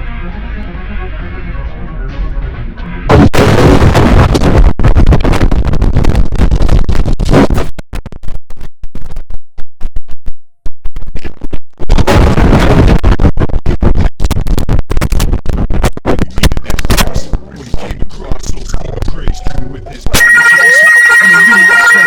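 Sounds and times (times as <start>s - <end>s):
distorted noisy blare: 3.1s - 8.4s, 11.1s - 22.0s.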